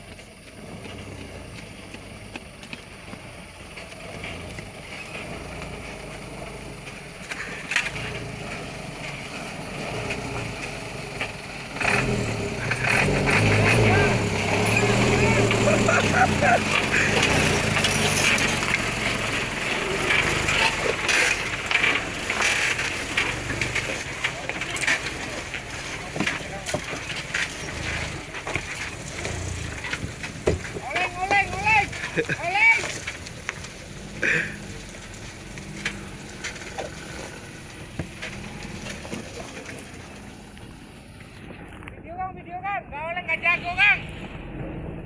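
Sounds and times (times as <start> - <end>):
truck rattling and creaking: 0.0 - 42.0
low engine hum: 0.0 - 45.0
truck body clanks: 6.9 - 40.4
high-pitched squeal: 11.8 - 23.9.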